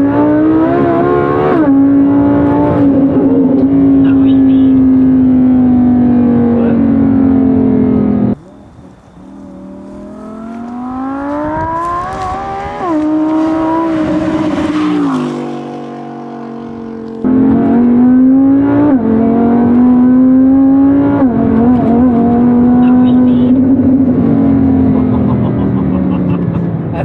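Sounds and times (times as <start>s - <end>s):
car engine accelerating through gears: 0.0s - 27.0s.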